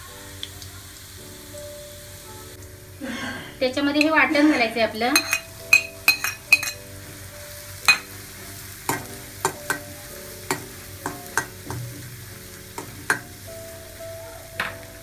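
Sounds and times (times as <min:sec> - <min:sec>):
low sizzle of frying: 0:00.0 - 0:15.0
utensil clinking against a pan: 0:04.0 - 0:06.9, 0:07.8 - 0:08.1, 0:08.9 - 0:12.0.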